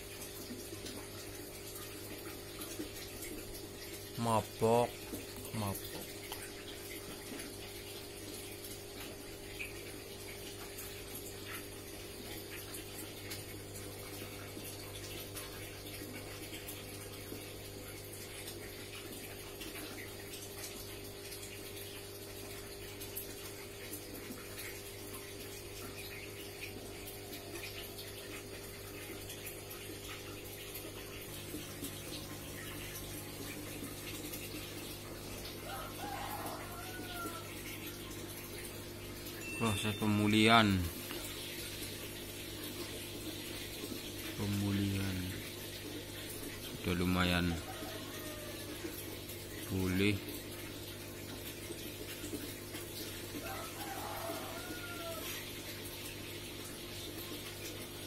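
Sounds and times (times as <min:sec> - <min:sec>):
water bubbling: 0:23.3 - 0:46.9.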